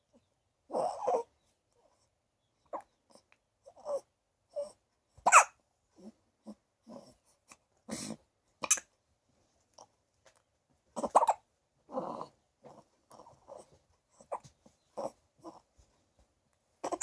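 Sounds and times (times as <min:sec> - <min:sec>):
baby hiccuping: 0:05.2 - 0:05.5, 0:11.0 - 0:11.4.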